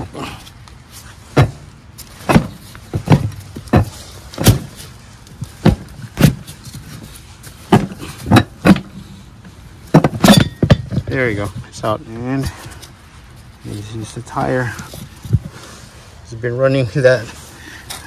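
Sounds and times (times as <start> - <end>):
sharp knocks on wheel: 2.2 - 4.7, 5.6 - 6.4, 7.7 - 9.0, 9.9 - 11.1.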